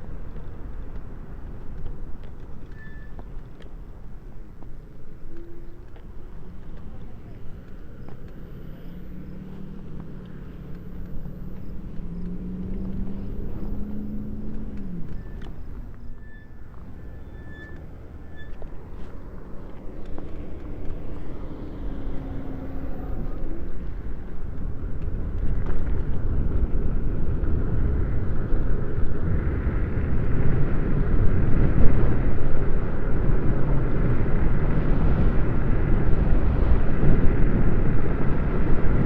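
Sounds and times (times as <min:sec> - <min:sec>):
wind rushing over microphone: 0:18.0 - 0:39.0.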